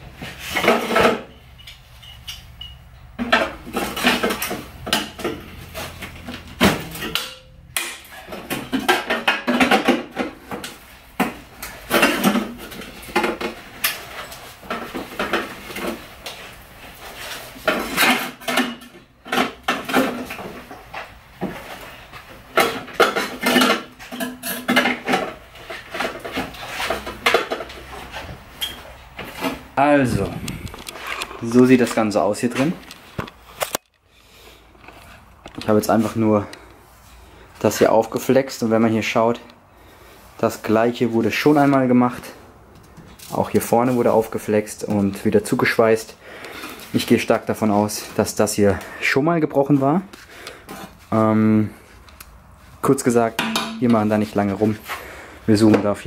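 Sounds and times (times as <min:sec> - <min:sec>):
sharp metal knocks: 0:53.4 - 0:54.0.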